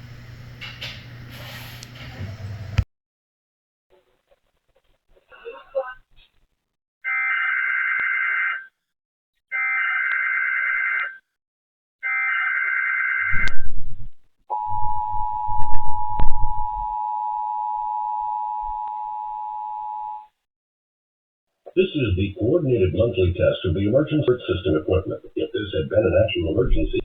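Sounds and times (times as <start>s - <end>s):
two-tone attention signal: 14.5s - 20.2s.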